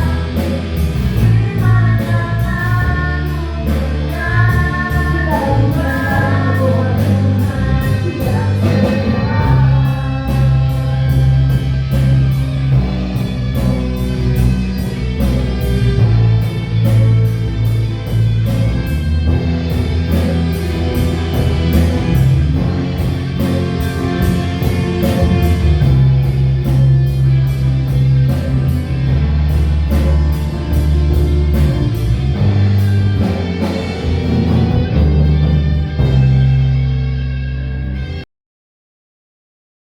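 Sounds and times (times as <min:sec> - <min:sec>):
person singing: 0:00.0 - 0:12.0
live band playing: 0:00.0 - 0:38.2.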